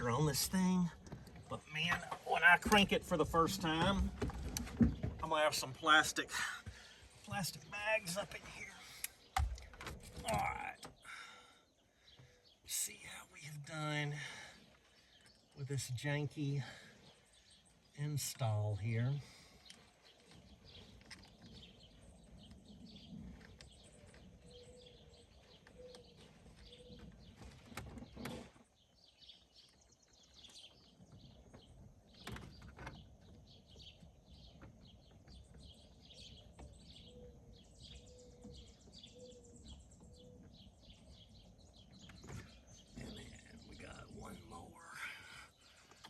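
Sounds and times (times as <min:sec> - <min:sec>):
faint birds chirping: 0:00.0 - 0:46.0
sharp knocks: 0:09.4 - 0:10.4.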